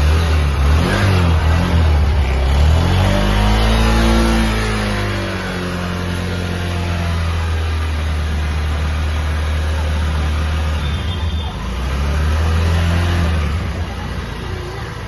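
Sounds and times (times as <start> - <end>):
motorcycle engine idling: 4.8 - 15.0.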